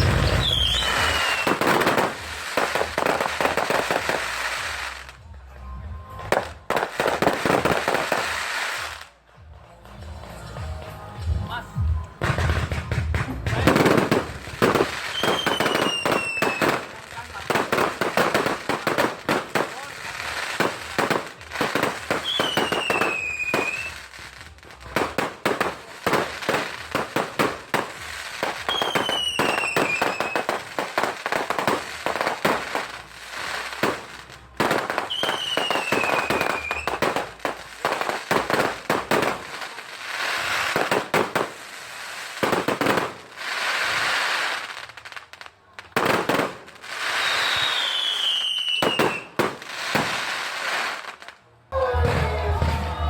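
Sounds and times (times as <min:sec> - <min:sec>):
falling firework whistles: 0:00.0 - 0:02.1, 0:15.0 - 0:16.6, 0:22.2 - 0:24.1, 0:28.6 - 0:30.4, 0:47.0 - 0:49.4
fireworks bangs and crackling: 0:00.0 - 0:53.0.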